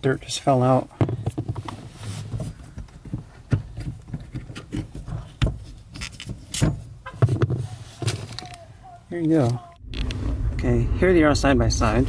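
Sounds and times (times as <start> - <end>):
car pedal parts clicking and knocking: 1.0 - 8.6.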